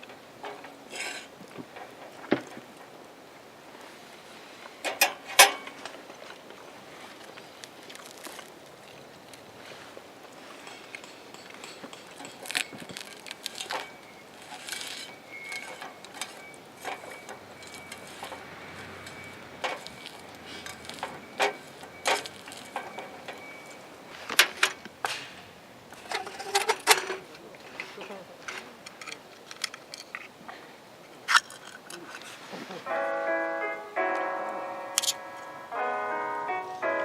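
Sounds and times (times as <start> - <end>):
small hard objects clicking: 10.7 - 18.4
faint high whistle-like tone: 14.9 - 18.3.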